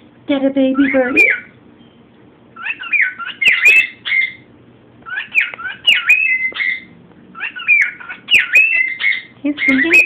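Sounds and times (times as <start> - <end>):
cockatiel whistling: 2.6 - 4.4, 5.1 - 10.0.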